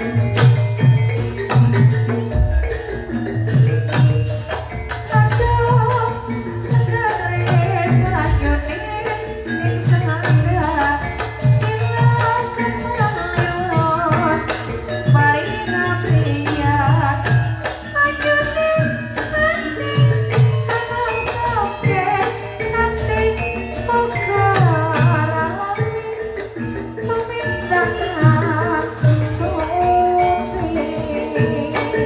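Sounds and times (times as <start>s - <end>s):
hand drum strokes: 0.0s - 17.7s
gamelan melodic instruments: 0.0s - 32.0s
person singing: 27.1s - 32.0s.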